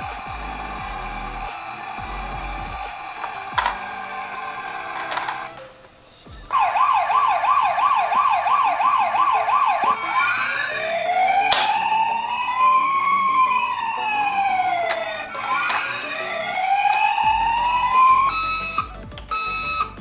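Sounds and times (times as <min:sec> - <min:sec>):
second siren wailing: 0:00.0 - 0:20.0
toy electronic siren: 0:00.0 - 0:20.0
sharp click: 0:11.5 - 0:12.2.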